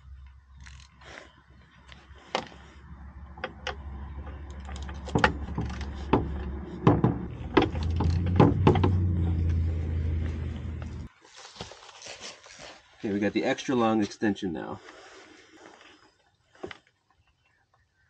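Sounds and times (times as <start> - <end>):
low mechanical hum: 0.0 - 11.1
hand tools clicking and knocking: 3.4 - 9.6.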